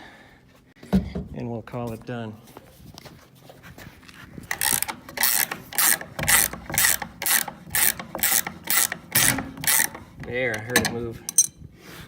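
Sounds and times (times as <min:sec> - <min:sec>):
ratcheting rasping strokes: 0:04.5 - 0:11.4.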